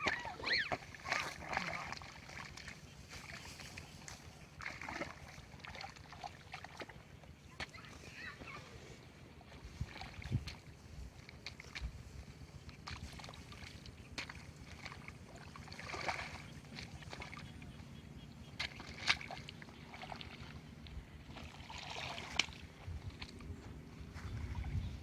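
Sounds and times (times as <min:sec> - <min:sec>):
water splashing and sloshing: 0:00.0 - 0:25.0.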